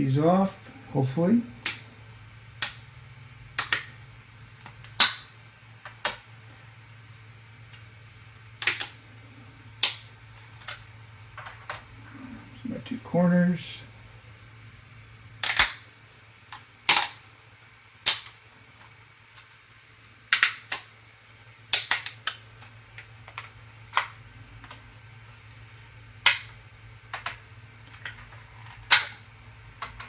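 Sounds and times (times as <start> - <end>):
plastic pieces snapping: 1.6 - 1.9, 2.6 - 2.9, 3.5 - 4.0, 4.6 - 5.4, 8.4 - 9.0, 9.8 - 10.8, 15.4 - 15.9, 16.5 - 17.2, 18.0 - 19.5, 20.3 - 20.9, 21.7 - 24.8, 26.2 - 29.2.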